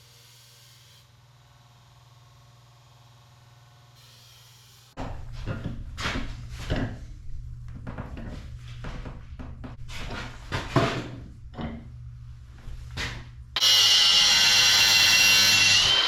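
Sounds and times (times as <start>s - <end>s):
power grinder grinding metal: 4.0s - 4.9s, 13.6s - 16.0s
low hum: 5.0s - 16.0s.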